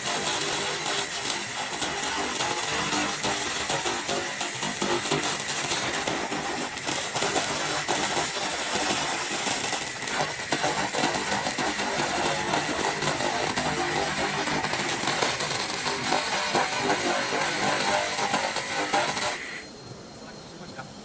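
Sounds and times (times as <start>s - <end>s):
laser crackling hiss: 0.0s - 19.7s
sharp ticks: 0.0s - 19.7s.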